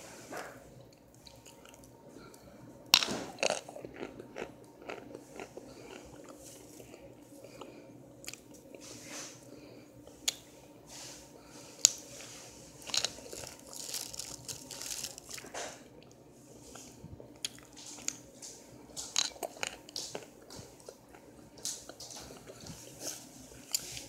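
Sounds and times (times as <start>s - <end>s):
crunchy chewing: 3.2s - 8.8s, 12.8s - 16.0s.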